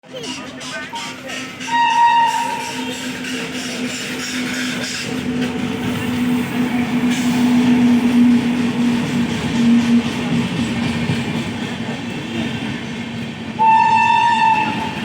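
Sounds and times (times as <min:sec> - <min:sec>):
train rumble: 0:00.0 - 0:15.0.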